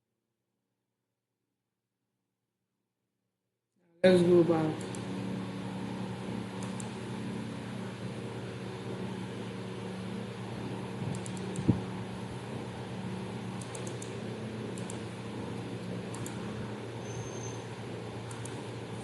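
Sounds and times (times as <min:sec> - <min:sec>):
low machine hum: 0:03.9 - 0:19.0
faint high ticks: 0:06.6 - 0:07.0, 0:11.1 - 0:11.7, 0:13.6 - 0:15.0, 0:18.2 - 0:18.6.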